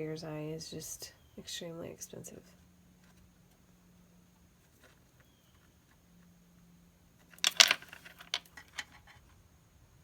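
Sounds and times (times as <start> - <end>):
stone beads clicking and rattling: 7.4 - 8.5.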